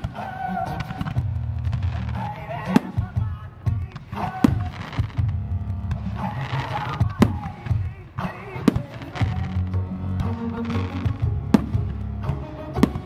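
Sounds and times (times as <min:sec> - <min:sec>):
fireworks sharp bangs: 0:00.0 - 0:12.2, 0:12.8 - 0:13.0
faint fireworks pops: 0:00.0 - 0:13.0
music: 0:00.0 - 0:13.0.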